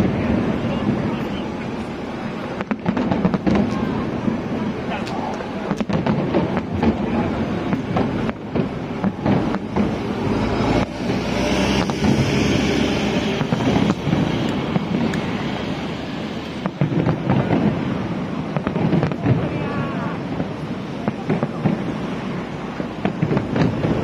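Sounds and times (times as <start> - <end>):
fireworks bangs and booms: 0.0 - 24.0
fireworks hissing and crackling: 0.0 - 24.0
fireworks rumble: 0.0 - 24.0.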